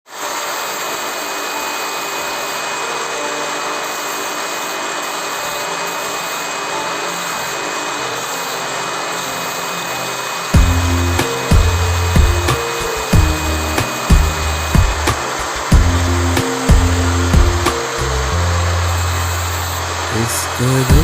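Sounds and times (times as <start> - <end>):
power tool whirring: 0.1 - 21.0
music with heavy bass beats: 10.6 - 21.0.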